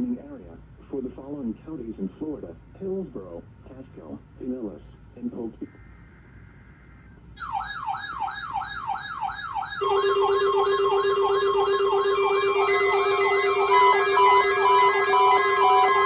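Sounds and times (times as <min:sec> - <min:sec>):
beeping tones: 0:07.4 - 0:16.0
wavering siren tone: 0:07.4 - 0:16.0
loud steady low tone: 0:09.8 - 0:16.0.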